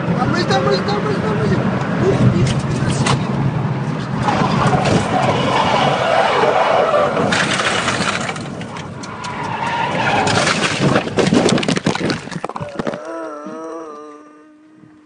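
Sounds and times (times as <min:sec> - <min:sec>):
tyres squealing: 0:04.2 - 0:10.5
car crash bangs and crunches: 0:04.3 - 0:08.7, 0:09.9 - 0:12.5.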